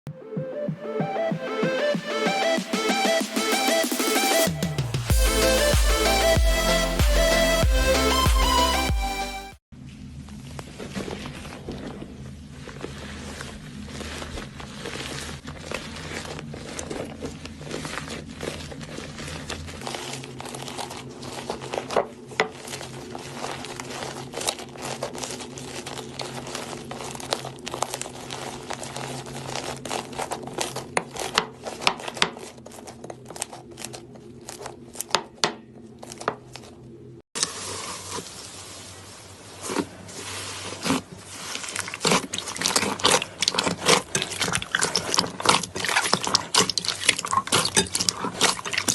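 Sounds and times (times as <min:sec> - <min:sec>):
slime crackling and popping: 0:09.8 - 0:36.8, 0:39.5 - 0:48.9.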